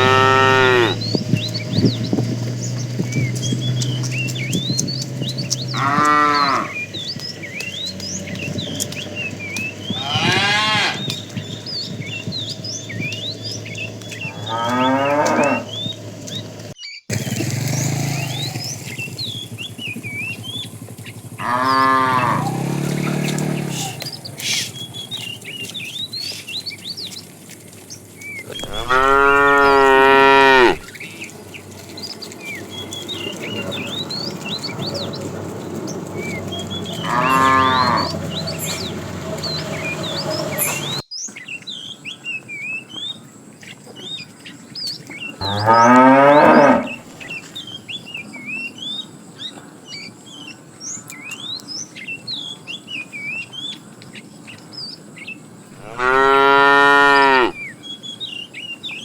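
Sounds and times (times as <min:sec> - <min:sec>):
cows mooing: 0:00.0 - 0:16.2, 0:21.2 - 0:24.5, 0:28.5 - 0:31.0, 0:36.1 - 0:40.9, 0:45.4 - 0:47.3, 0:55.8 - 0:57.6.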